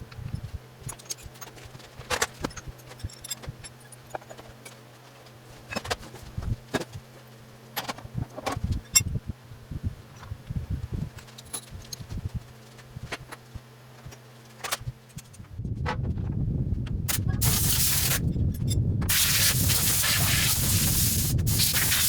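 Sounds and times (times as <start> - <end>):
steady low hum: 0.0 - 22.0
metal tools clinking: 0.9 - 4.8, 11.2 - 12.1.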